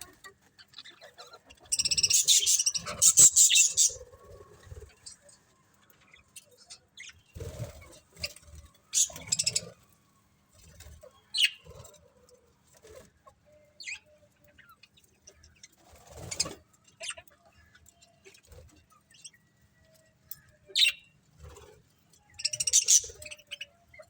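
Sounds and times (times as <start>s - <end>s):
parrots chirping: 1.7s - 4.0s, 8.9s - 9.7s, 22.4s - 23.5s.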